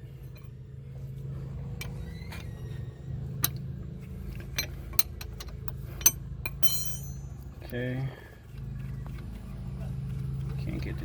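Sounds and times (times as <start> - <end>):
steady low hum: 0.0 - 11.0
metal bolts clicking and clinking: 4.3 - 7.8.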